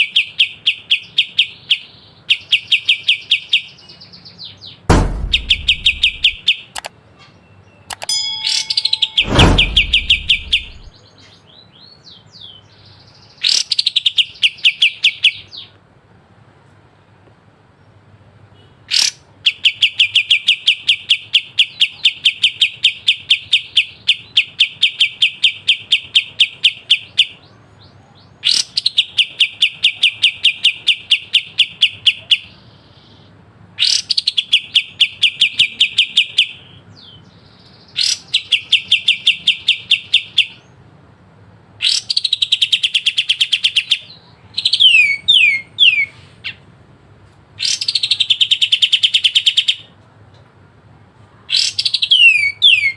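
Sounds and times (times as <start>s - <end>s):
bird singing rattling trills: 7.9s - 11.0s.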